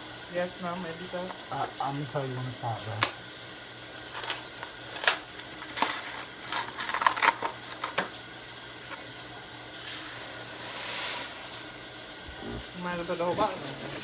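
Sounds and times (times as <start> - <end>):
grains pouring hiss: 5.5 - 14.0.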